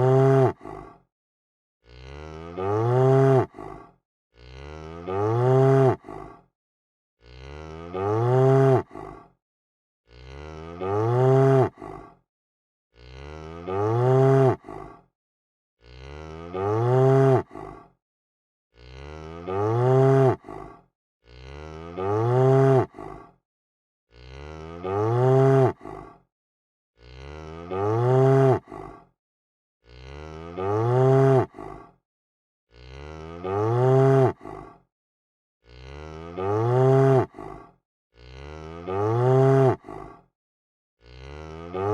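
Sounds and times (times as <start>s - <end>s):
cow mooing: 0.0s - 0.6s, 1.9s - 3.5s, 4.4s - 6.0s, 7.2s - 8.9s, 10.1s - 11.8s, 13.0s - 14.6s, 15.8s - 17.5s, 18.8s - 20.5s, 21.3s - 22.9s, 24.1s - 25.8s, 27.0s - 28.7s, 29.9s - 31.5s, 32.7s - 34.4s, 35.7s - 37.3s, 38.2s - 39.9s, 41.1s - 41.9s.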